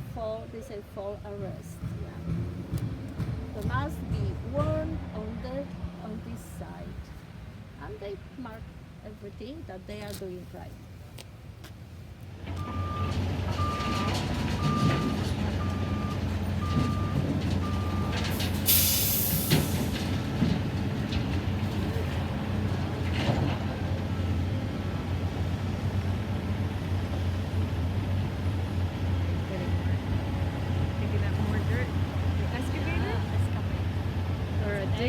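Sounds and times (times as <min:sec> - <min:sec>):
diesel engine running: 0:00.0 - 0:08.4, 0:12.3 - 0:35.0
backup alarm beeping: 0:12.6 - 0:18.2
air release hiss: 0:18.6 - 0:19.9.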